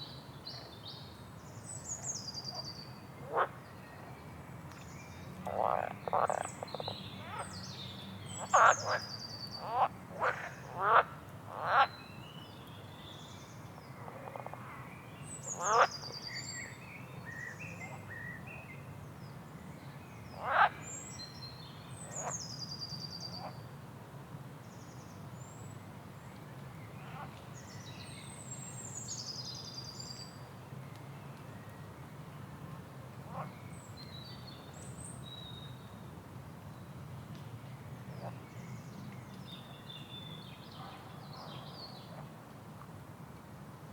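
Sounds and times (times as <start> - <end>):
frogs croaking: 3.2 - 3.6, 5.4 - 7.4, 8.4 - 11.9, 15.6 - 16.0, 20.4 - 20.8.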